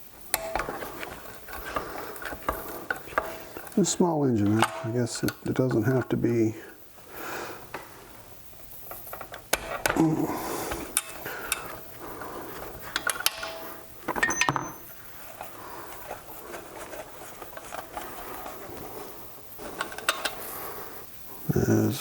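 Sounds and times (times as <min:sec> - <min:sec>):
metal tools clinking: 0:13.0 - 0:15.0.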